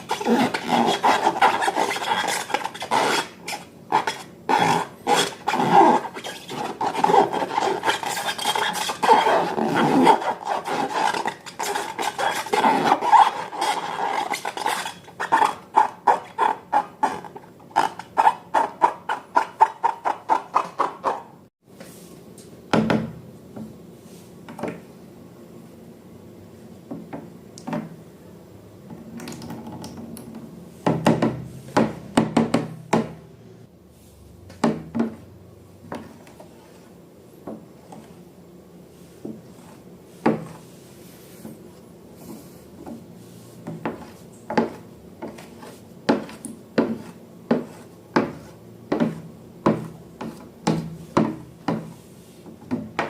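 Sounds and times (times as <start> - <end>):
utensil scraping bowl: 0.0 - 21.4, 43.5 - 52.0.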